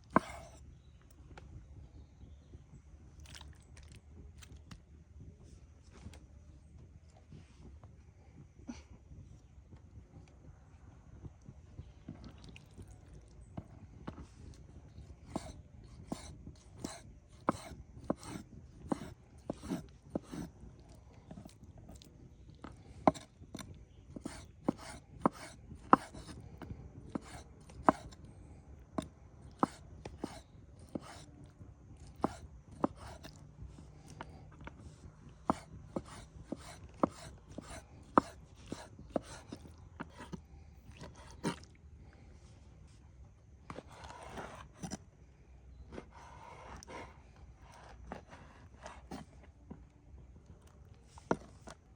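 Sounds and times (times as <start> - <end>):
knife chopping on wooden board: 0.1 - 0.6, 15.2 - 20.5, 23.1 - 26.4, 27.1 - 28.2, 29.6 - 31.3, 32.2 - 33.3, 35.4 - 40.4.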